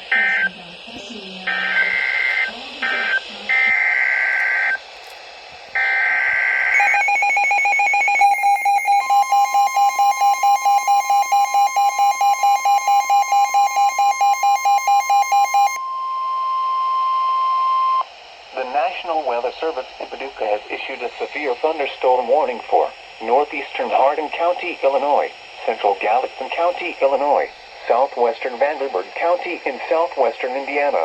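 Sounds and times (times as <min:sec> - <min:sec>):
rapid electronic beeping alarm: 0:00.0 - 0:04.9, 0:05.7 - 0:28.9
steady alarm tone: 0:00.0 - 0:31.0
screeching digital data tones: 0:01.4 - 0:04.8, 0:05.8 - 0:16.6.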